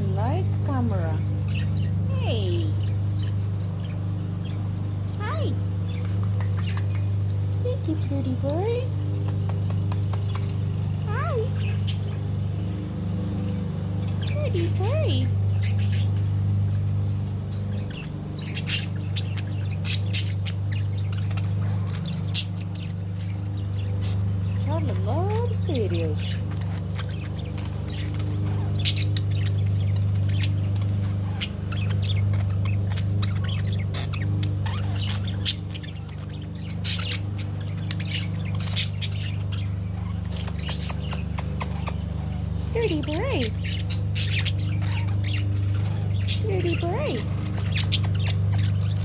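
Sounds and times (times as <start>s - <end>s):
budgerigars chirping: 0.0s - 49.0s
steady low hum: 0.0s - 49.0s.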